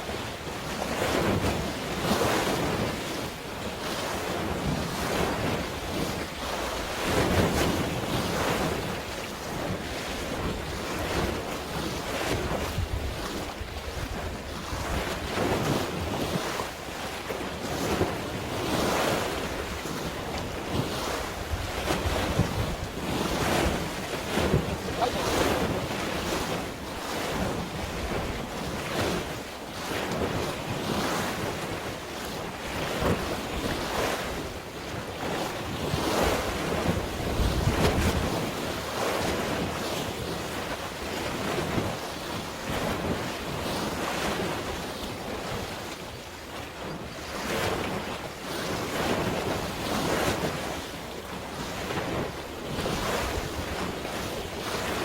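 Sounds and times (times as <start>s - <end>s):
waves washing: 0.0s - 55.0s
wind buffeting microphone: 3.8s - 31.9s, 35.2s - 40.6s.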